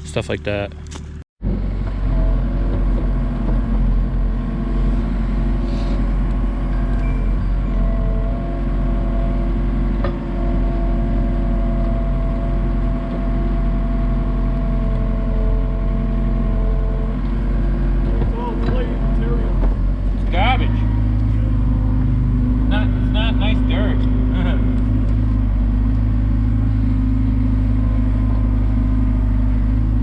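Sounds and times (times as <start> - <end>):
excavator diesel engine running: 0.0 - 30.0
high whine: 14.4 - 30.0.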